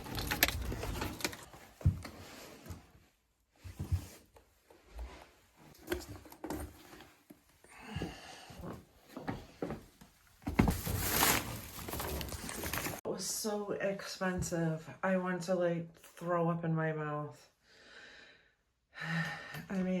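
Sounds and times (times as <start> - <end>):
rustling: 0.0 - 2.7, 10.5 - 13.0.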